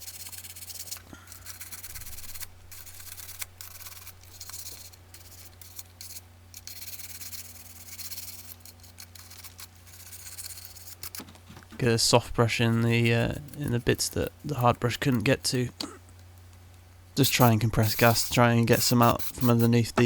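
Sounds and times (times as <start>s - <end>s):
steady low hum: 0.0s - 20.0s
brush scrubbing scratchy rasping: 11.8s - 15.4s, 17.2s - 20.0s.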